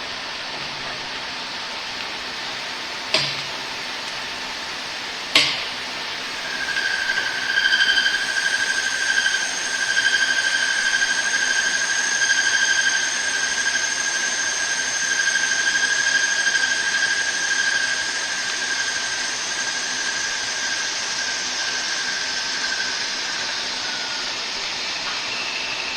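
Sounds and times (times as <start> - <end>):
high-pitched mechanical squeal: 6.3 - 25.9.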